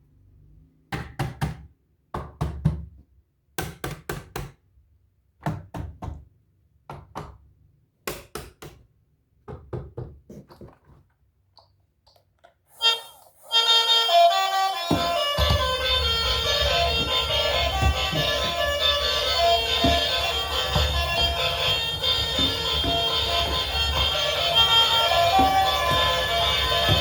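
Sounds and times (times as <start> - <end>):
knocking on hard surface: 14.8 - 27.0.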